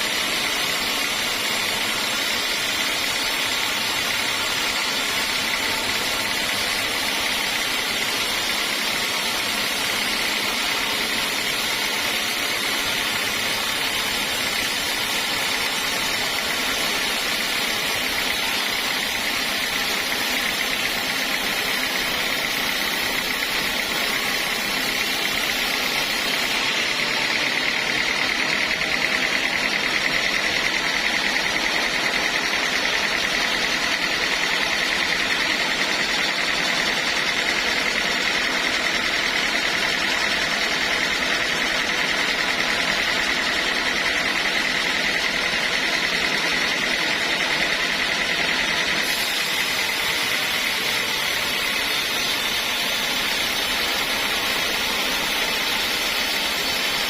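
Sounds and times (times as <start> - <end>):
machine noise: 0.0 - 57.0
sawmill saw whining: 0.0 - 57.0.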